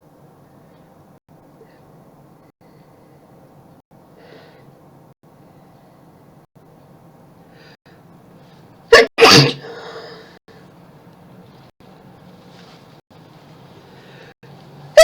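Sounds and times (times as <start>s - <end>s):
person sneezing: 8.9s - 10.0s.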